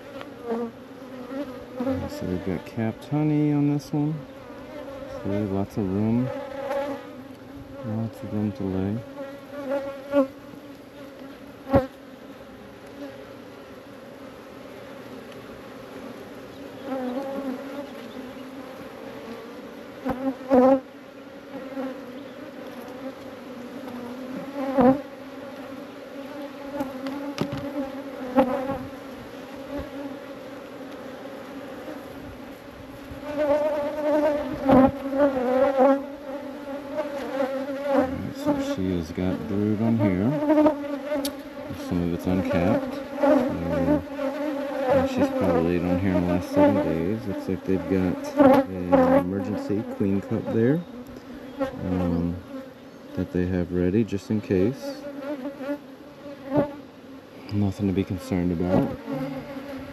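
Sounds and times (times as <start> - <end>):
honey bees buzzing: 0.0 - 59.9
sharp knocks: 27.4 - 27.7.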